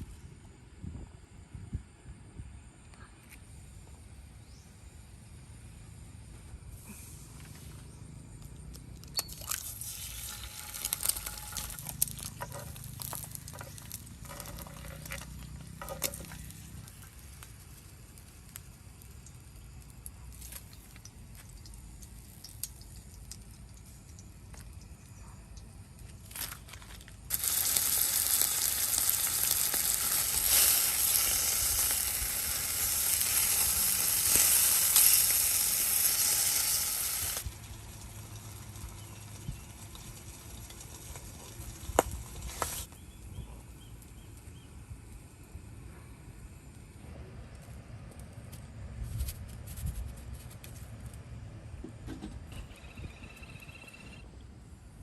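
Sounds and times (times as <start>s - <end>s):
food sizzling in hot oil: 9.6s - 24.2s, 27.3s - 42.9s.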